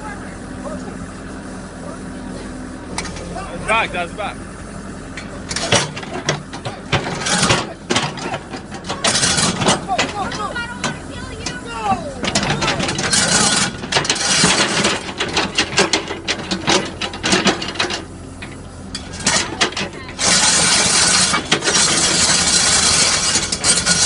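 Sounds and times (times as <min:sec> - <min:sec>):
excavator engine running: 0:00.0 - 0:24.0
metallic clanks and knocks: 0:05.1 - 0:24.0.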